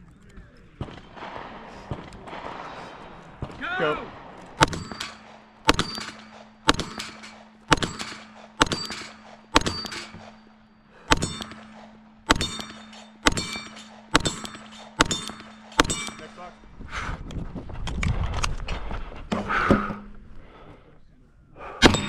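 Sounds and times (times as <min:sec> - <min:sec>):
low hum: 0:00.0 - 0:22.0
pistol shots: 0:00.8 - 0:16.5
steel plate ringing: 0:04.6 - 0:16.6.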